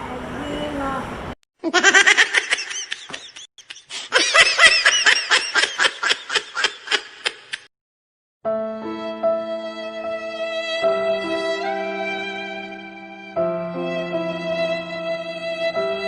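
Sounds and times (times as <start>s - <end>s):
high-pitched laughter: 1.6s - 7.6s.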